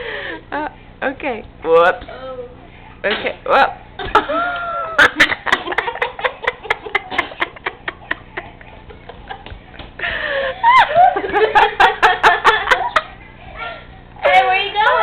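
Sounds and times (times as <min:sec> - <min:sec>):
laughter: 0:04.0 - 0:13.2.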